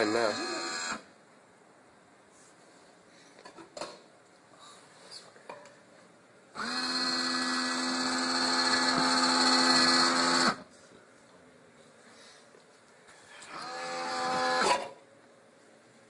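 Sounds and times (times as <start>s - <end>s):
vending machine motor whining: 0.0s - 1.1s, 6.5s - 10.6s, 13.5s - 15.0s.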